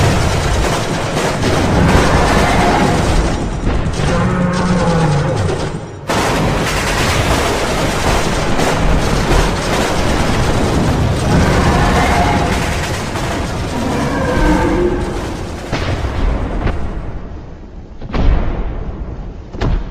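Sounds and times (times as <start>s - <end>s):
explosion booms: 0.0s - 4.6s, 6.1s - 17.3s
continuous gunfire: 0.0s - 17.4s.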